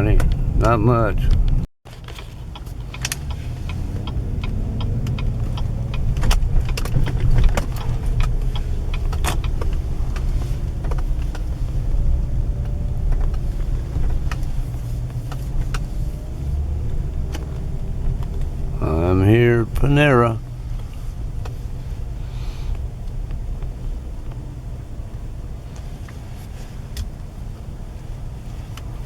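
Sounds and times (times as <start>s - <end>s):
car engine and road noise: 0.0s - 29.0s
light clicks and rattles: 1.3s - 18.6s.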